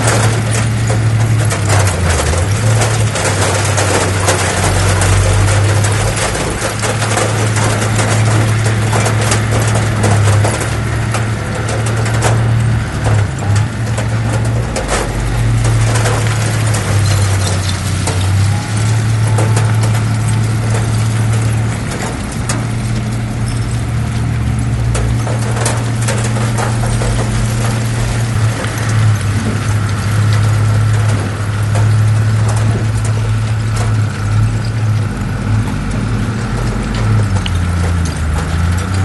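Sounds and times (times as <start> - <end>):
heavy diesel machinery running: 0.0 - 39.0
metallic clanks and rattles: 0.0 - 39.0.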